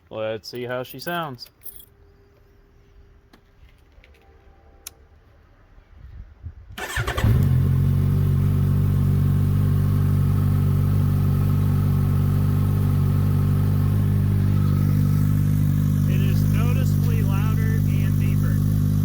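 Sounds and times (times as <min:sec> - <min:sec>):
motorcycle starter cranking: 0:06.8 - 0:07.9
motorcycle engine idling: 0:06.8 - 0:19.0.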